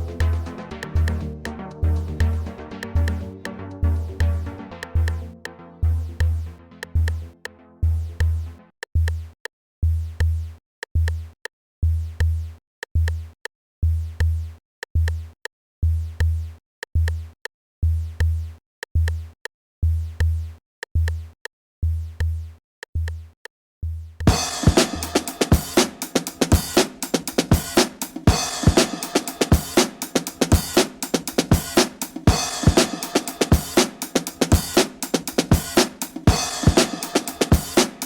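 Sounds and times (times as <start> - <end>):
electronic music: 0.0 - 8.7, 24.3 - 38.0
drum-machine kick beat: 0.0 - 23.2, 24.2 - 38.0.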